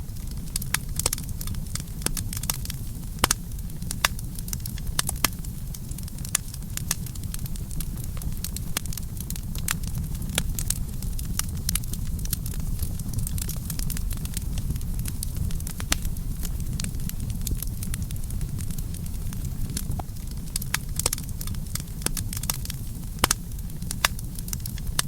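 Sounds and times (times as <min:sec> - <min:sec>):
burning wood crackling and popping: 0:00.0 - 0:25.0
campfire low rumble: 0:00.0 - 0:25.0.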